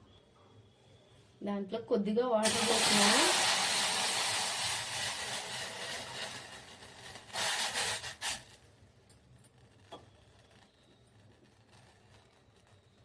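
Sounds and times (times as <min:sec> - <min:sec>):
water pouring into pot: 0:02.4 - 0:08.6.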